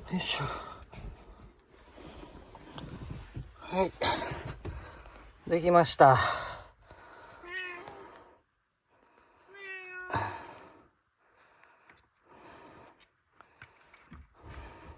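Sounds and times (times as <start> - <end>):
faint soft noises: 0.0 - 10.9
cat meowing: 7.4 - 8.2, 9.5 - 10.5.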